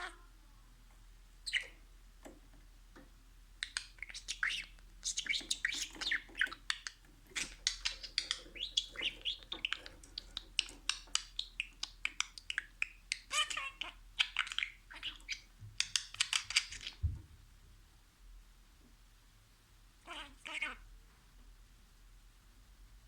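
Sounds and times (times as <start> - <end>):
budgerigar chattering and warbling: 3.6 - 17.0, 20.1 - 20.8.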